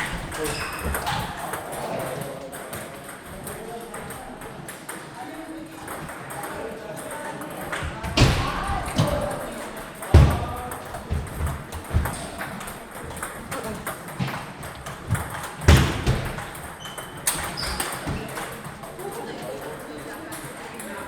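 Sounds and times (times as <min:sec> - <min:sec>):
table tennis ball hits: 0:05.8 - 0:18.9.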